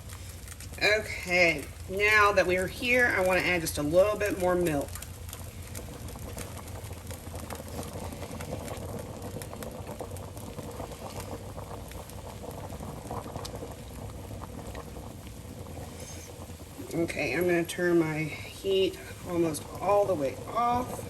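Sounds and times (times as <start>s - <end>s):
gravy bubbling on stove: 0.0s - 21.0s
small crackling pops: 0.0s - 21.0s.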